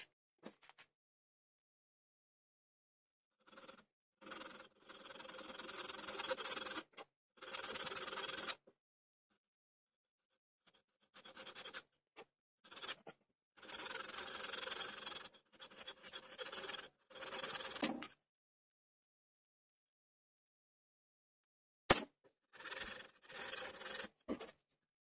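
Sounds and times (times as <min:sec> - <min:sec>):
hand scratching on wood: 0:10.7 - 0:11.9, 0:12.7 - 0:17.8, 0:22.6 - 0:24.5.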